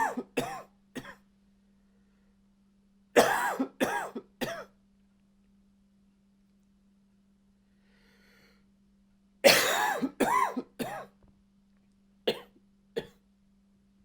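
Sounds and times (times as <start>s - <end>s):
man coughing: 0.0s - 1.2s, 3.2s - 4.7s, 9.4s - 11.1s, 12.3s - 13.1s.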